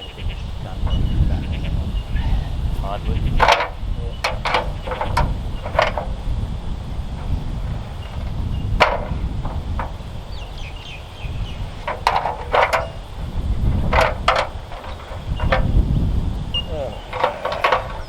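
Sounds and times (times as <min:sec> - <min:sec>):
wooden knocks of timber: 0:07.2 - 0:10.2, 0:11.7 - 0:15.8, 0:17.1 - 0:18.0.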